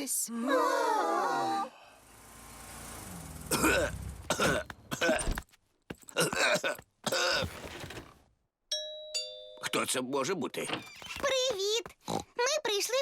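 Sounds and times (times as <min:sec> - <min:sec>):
cartoon character coughing: 0:03.5 - 0:05.4, 0:06.2 - 0:07.4.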